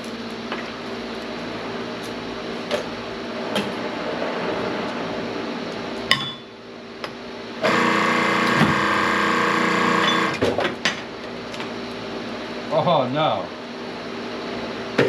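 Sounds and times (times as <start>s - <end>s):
electric wire stripping machine: 7.6s - 10.6s.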